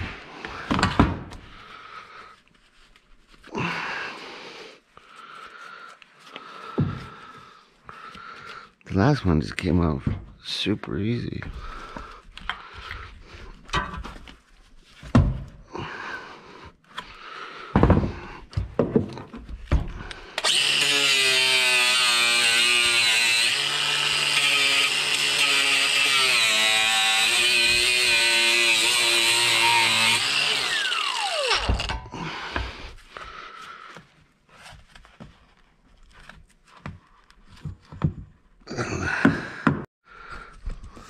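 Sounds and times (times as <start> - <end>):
knocks and clatter of handling: 17.8 - 20.0, 34.7 - 38.6
electric power tool motor: 20.4 - 32.2.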